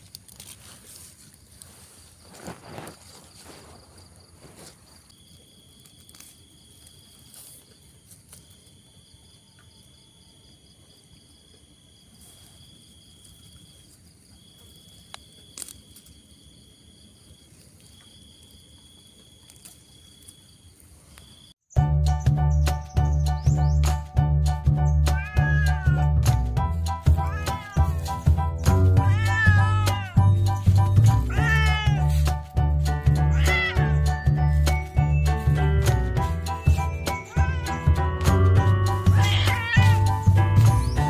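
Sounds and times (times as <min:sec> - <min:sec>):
rustling: 0:00.0 - 0:08.6, 0:25.0 - 0:41.0
insects trilling: 0:01.0 - 0:21.6, 0:22.2 - 0:41.0.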